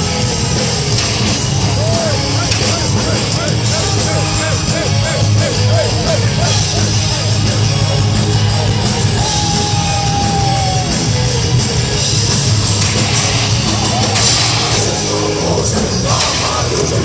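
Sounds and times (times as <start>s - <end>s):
guitar lead long high note: 0.0s - 17.0s
heavy metal band playing live: 0.0s - 17.0s.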